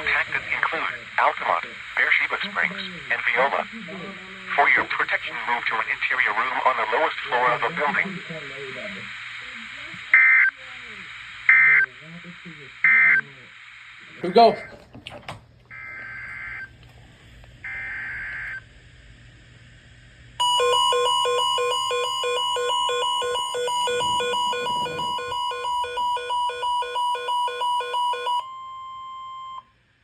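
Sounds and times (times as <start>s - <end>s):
short alert tones: 20.4s - 29.6s
pulsing multi-pitch alarm tone: 20.4s - 29.7s
single steady tone: 20.4s - 29.8s.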